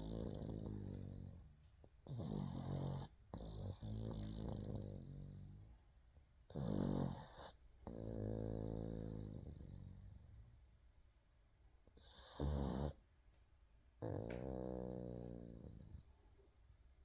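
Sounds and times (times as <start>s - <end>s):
dog snoring: 0.0s - 5.8s, 6.5s - 10.5s, 12.0s - 13.0s, 14.0s - 16.1s.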